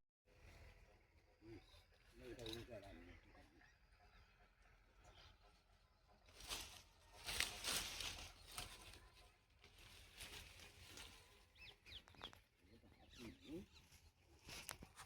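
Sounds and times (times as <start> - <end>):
leafy plants rustling: 6.3 - 12.2.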